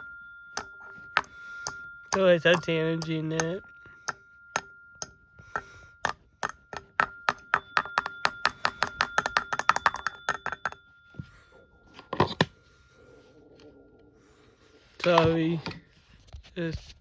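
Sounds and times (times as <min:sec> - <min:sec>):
fire alarm bell ringing: 0:00.0 - 0:12.2.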